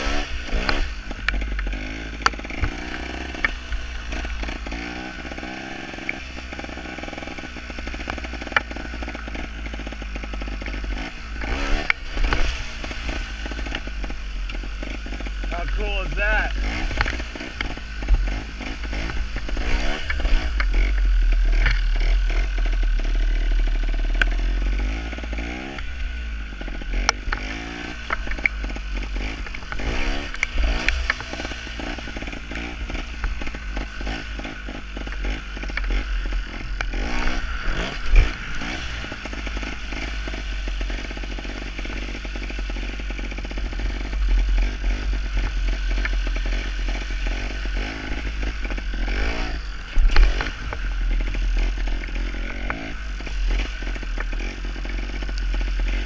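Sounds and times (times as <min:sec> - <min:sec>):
low rumble: 0:00.0 - 0:56.0
motorcycle engine revving: 0:00.0 - 0:56.0.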